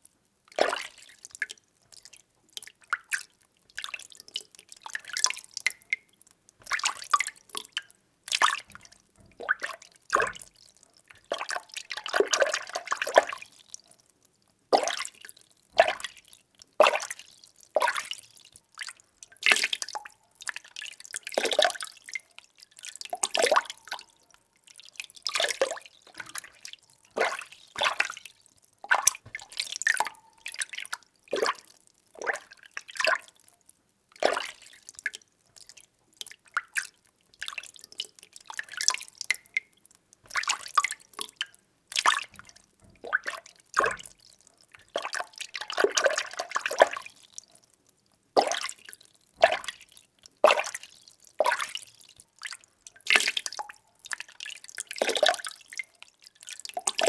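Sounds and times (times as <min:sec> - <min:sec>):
water sloshing when stirred: 0:25.2 - 0:33.3.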